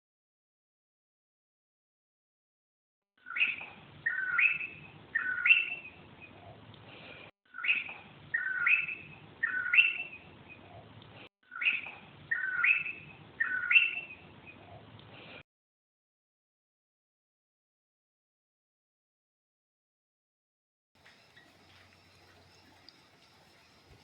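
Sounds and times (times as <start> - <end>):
bird whistling: 3.2 - 6.0, 7.5 - 10.2, 11.5 - 14.2.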